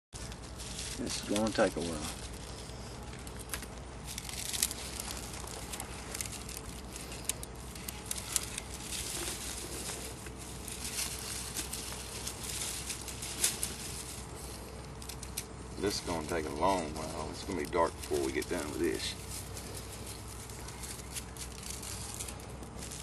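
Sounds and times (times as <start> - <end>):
rustling and crinkling: 0.2 - 23.0.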